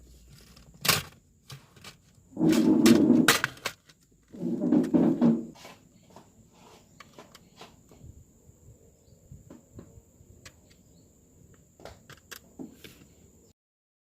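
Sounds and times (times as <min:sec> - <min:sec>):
small parts clicking and tapping: 0:11.5 - 0:13.1.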